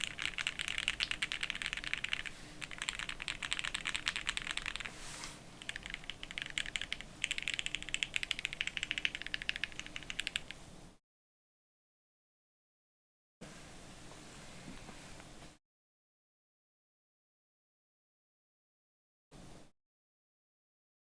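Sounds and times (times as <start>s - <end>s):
mechanical keyboard typing: 0.0s - 4.9s, 5.6s - 10.6s.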